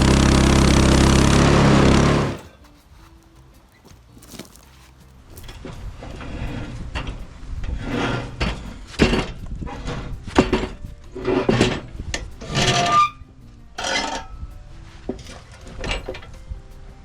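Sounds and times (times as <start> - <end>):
wood scraping and knocking: 1.7 - 13.1.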